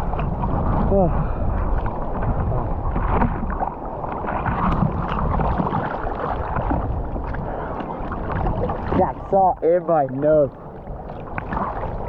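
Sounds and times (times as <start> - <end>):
ocean surf churning: 0.0 - 12.0
swimmer splashing: 3.1 - 9.7.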